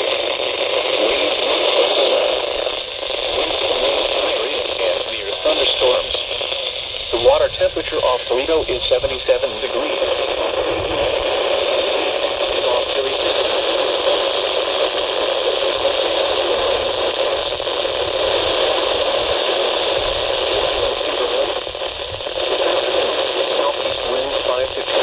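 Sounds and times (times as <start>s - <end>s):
faint broadcast voice: 0.0s - 25.0s
radio static hiss: 0.0s - 25.0s.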